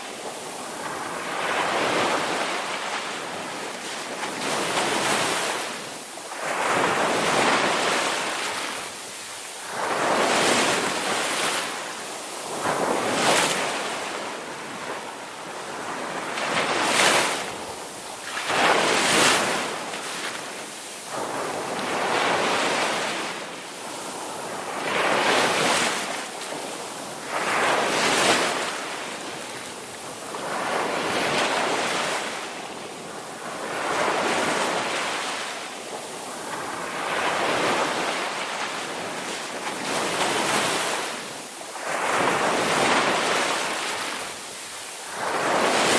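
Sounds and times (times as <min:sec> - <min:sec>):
ocean waves breaking: 0:36.2 - 0:45.9.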